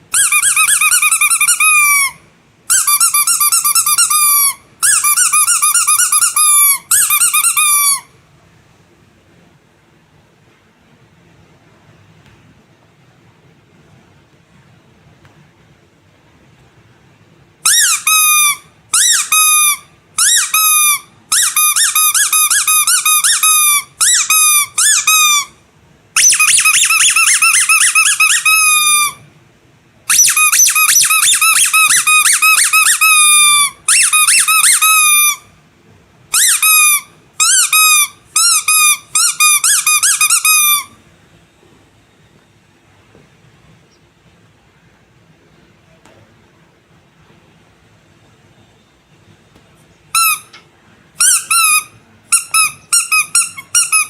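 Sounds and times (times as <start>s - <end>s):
squeaky rubber toy squeaking: 0.1s - 8.2s, 17.6s - 25.6s, 26.2s - 29.3s, 30.1s - 35.5s, 36.3s - 41.0s, 50.1s - 50.6s, 51.2s - 54.0s.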